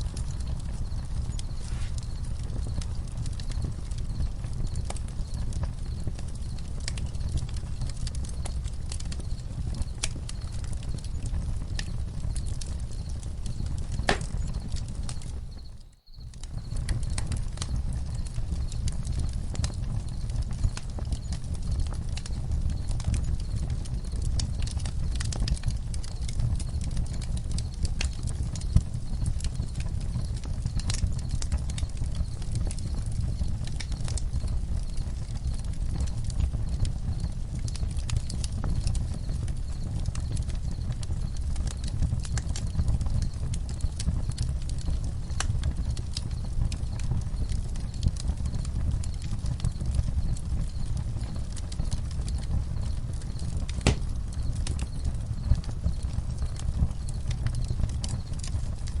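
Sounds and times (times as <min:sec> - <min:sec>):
campfire crackling and popping: 0:00.0 - 0:59.0
crickets chirping: 0:00.9 - 0:02.8, 0:12.9 - 0:17.2.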